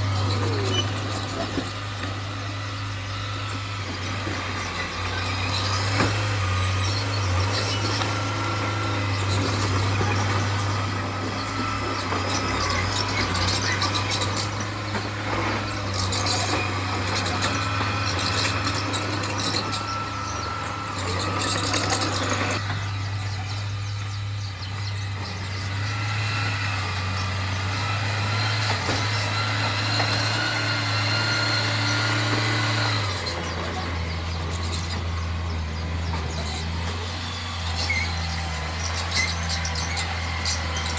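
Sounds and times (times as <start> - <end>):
diesel machinery engine drone: 0.0 - 40.9
metallic clanks and squeaks: 0.0 - 40.9.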